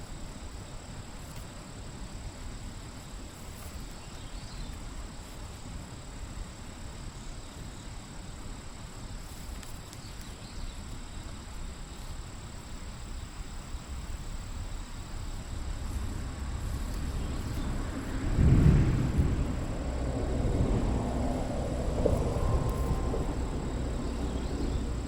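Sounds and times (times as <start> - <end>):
high-pitched insect trill: 0.0 - 25.0
low rumble: 15.5 - 25.0.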